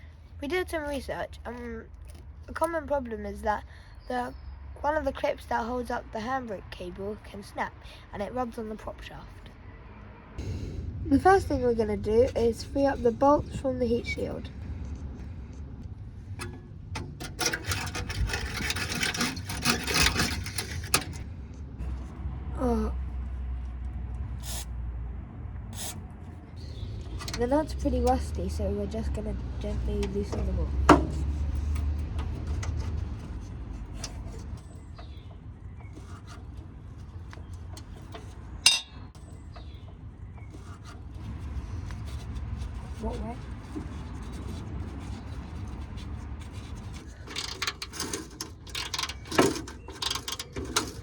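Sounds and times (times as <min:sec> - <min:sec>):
spanner clinking on metal nuts: 0:27.0 - 0:28.2, 0:37.4 - 0:39.3, 0:47.2 - 0:51.0
sharp metal clank: 0:38.7 - 0:39.1.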